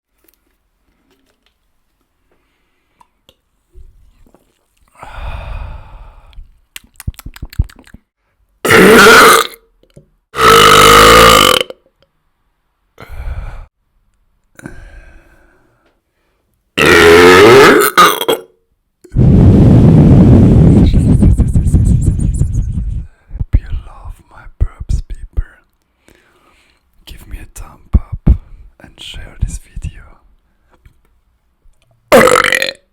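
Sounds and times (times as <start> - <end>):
person burping: 8.6 - 9.7, 10.4 - 11.8, 16.8 - 18.6, 32.1 - 32.9.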